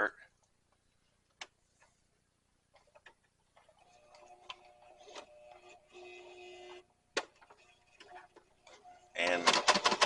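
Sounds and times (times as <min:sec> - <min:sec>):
sewing machine stitching: 0:03.6 - 0:10.0.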